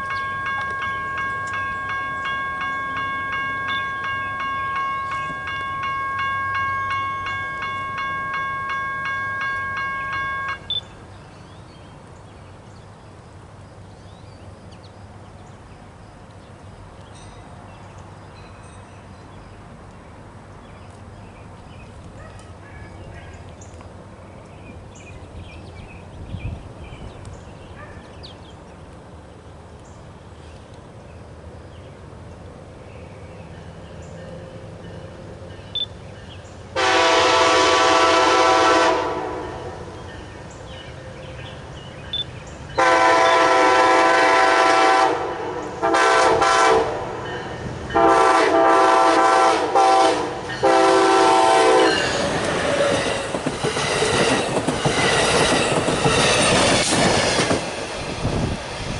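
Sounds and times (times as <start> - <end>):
faint outdoor background: 0.0 - 58.9
locomotive horn chord blasts: 36.8 - 39.8, 42.8 - 47.3, 47.9 - 52.1.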